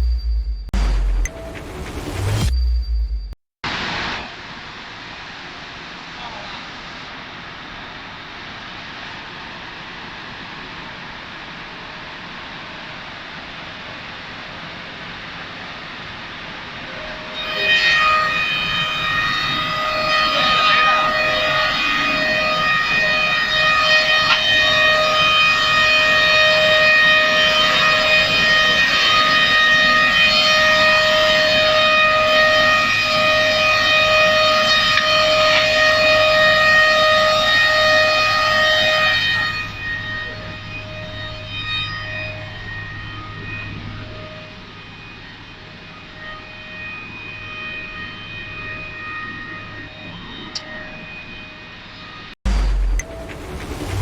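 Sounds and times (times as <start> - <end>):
low hum: 0.0 - 4.3, 52.5 - 54.0
moulder high-pitched whine: 10.2 - 54.0
woodworking machine whining: 17.4 - 32.5.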